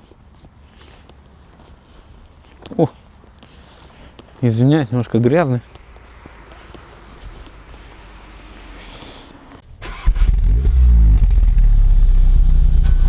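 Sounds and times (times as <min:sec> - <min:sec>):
car engine starting and idling: 0:06.0 - 0:13.0.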